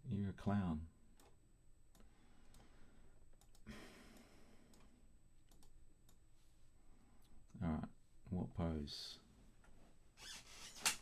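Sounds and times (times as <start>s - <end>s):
faint clicks: 3.3s - 4.9s, 5.5s - 6.2s.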